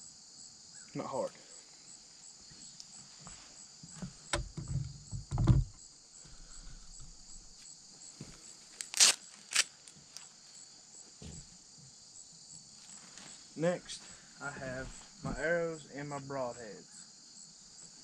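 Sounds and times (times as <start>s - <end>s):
crickets chirping: 0.0s - 18.0s
handling knocks and thumps: 3.9s - 7.6s, 11.2s - 11.5s, 14.6s - 15.5s.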